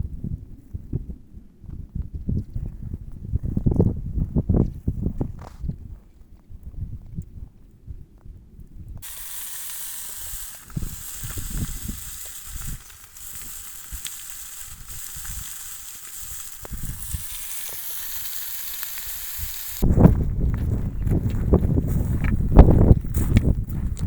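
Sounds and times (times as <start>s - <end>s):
chicken sizzling on hot stone: 9.0s - 19.8s.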